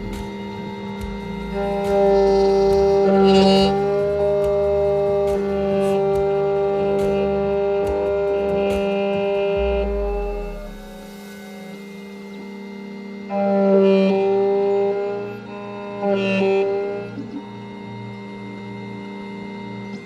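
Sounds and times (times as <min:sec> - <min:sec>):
held chord with light beat: 0:00.0 - 0:13.5.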